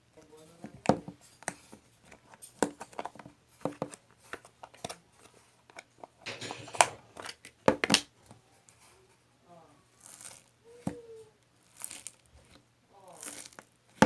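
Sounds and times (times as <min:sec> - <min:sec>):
clicks and taps of handled objects: 0:00.2 - 0:08.8
crinkling rustle: 0:09.9 - 0:14.0.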